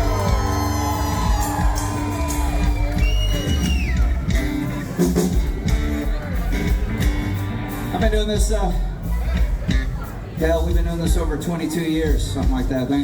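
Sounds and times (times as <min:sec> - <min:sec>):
crowd whooping and yelling: 0:00.0 - 0:07.1
live country-rock band playing: 0:00.0 - 0:13.0.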